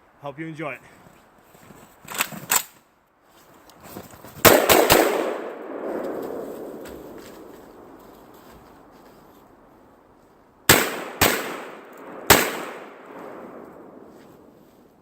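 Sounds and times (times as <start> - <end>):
rolling echo of gunshots: 4.4 - 8.0, 10.7 - 14.1
shotgun shots: 4.4 - 8.0, 10.7 - 14.1.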